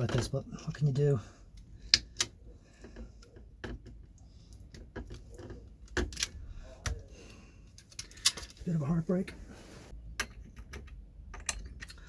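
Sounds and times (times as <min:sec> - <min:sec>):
metal tools clicking and knocking: 0:07.7 - 0:08.6, 0:10.1 - 0:12.0.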